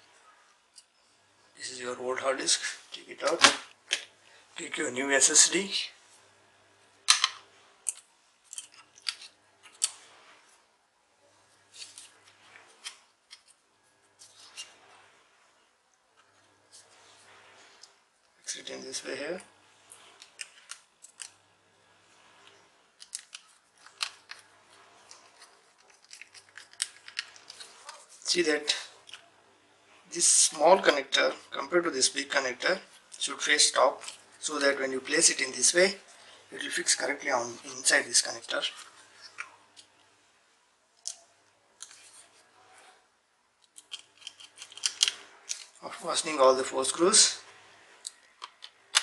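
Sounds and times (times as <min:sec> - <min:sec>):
screwdriver clicks and scrapes: 0:43.6 - 0:45.8.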